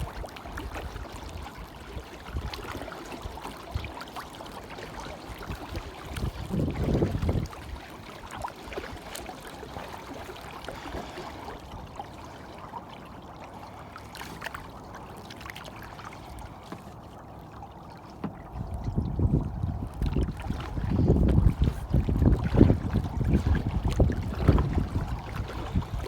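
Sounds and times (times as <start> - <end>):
water splashing around kayak: 0.0 - 26.0
wind gust on microphone: 5.5 - 7.7, 18.6 - 26.0.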